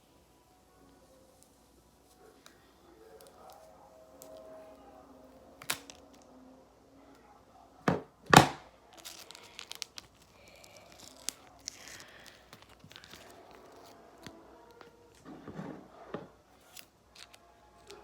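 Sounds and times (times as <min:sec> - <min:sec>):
screen protector crackling: 0:05.6 - 0:06.2, 0:08.3 - 0:15.3, 0:16.6 - 0:18.0
screen protector ripping: 0:05.6 - 0:06.2, 0:08.3 - 0:14.3, 0:16.6 - 0:18.0.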